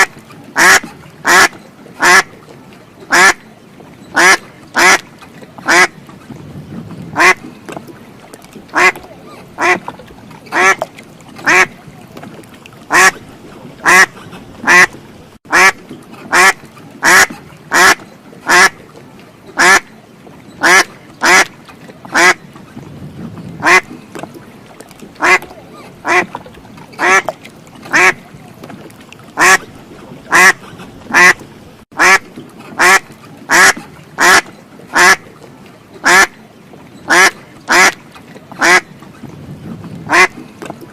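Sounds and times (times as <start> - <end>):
duck quacking: 0.6 - 2.3, 3.1 - 3.4, 4.2 - 5.0, 5.7 - 5.9, 7.2 - 7.4, 8.7 - 9.0, 9.6 - 9.9, 10.5 - 10.8, 11.4 - 11.7, 12.9 - 13.2, 13.8 - 18.8, 19.6 - 19.8, 20.6 - 21.5, 22.1 - 22.4, 23.6 - 23.9, 25.2 - 26.3, 27.0 - 27.3, 27.9 - 28.2, 29.4 - 29.7, 30.3 - 31.4, 32.0 - 32.2, 32.8 - 35.2, 36.0 - 36.3, 37.1 - 38.0, 38.6 - 38.8, 40.1 - 40.3.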